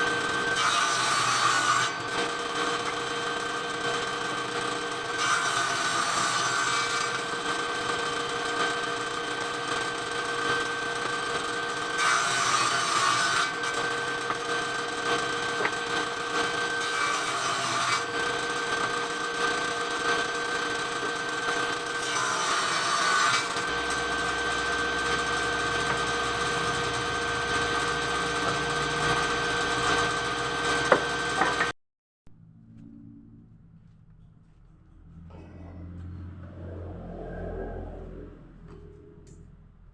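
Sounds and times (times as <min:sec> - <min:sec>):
circular saw cutting wood: 0:00.0 - 0:31.7.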